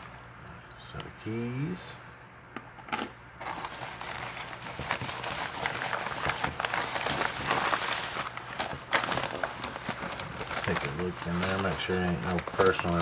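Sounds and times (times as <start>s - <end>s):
packaging crinkling: 3.4s - 13.0s.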